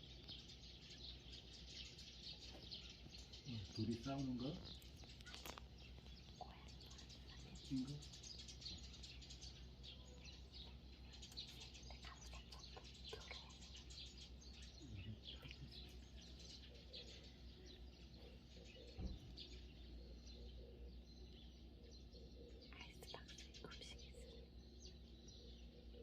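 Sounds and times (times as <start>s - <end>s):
small birds chirping: 0.0s - 26.0s.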